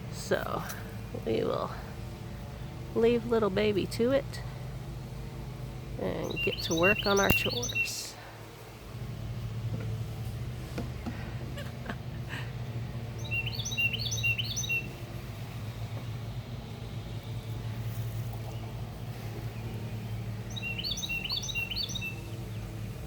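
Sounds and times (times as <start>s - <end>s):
steady low hum: 0.0s - 23.0s
songbird chirping: 6.0s - 8.1s, 13.1s - 15.0s, 16.0s - 23.0s.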